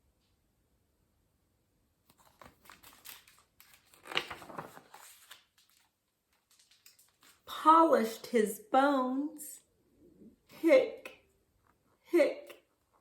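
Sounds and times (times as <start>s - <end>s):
paper pages rustling: 2.0s - 7.5s.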